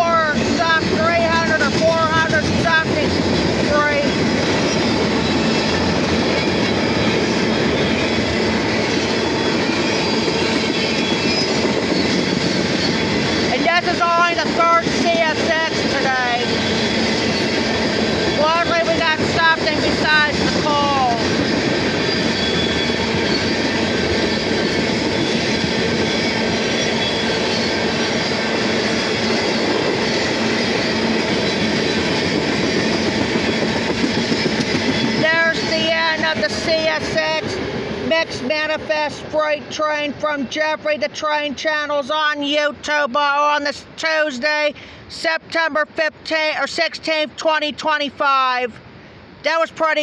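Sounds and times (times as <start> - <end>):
train wheels rolling on rails: 0.0 - 44.4
faint high wheel squeal: 3.0 - 13.5, 20.8 - 32.1.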